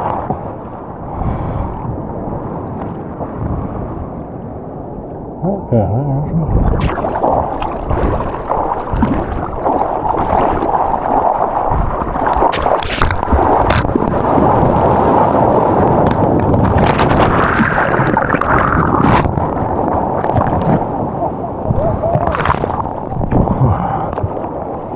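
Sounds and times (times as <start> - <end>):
ocean water rushing: 0.0 - 24.9
sharp splashes or knocks: 6.8 - 14.6.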